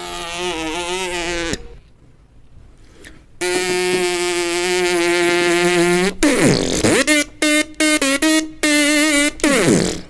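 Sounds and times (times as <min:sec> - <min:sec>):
buzzy cartoon horn tone: 0:00.0 - 0:01.8, 0:03.4 - 0:10.0.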